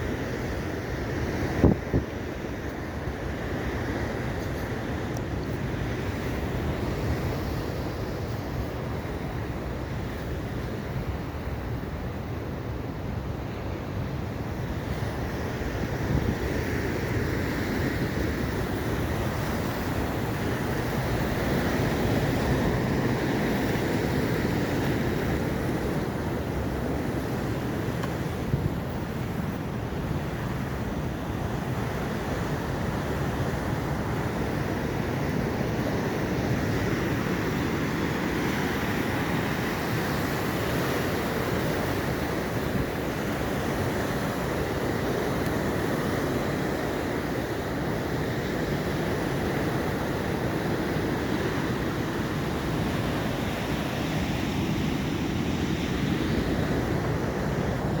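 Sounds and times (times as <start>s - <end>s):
ocean waves breaking: 0.0s - 58.0s.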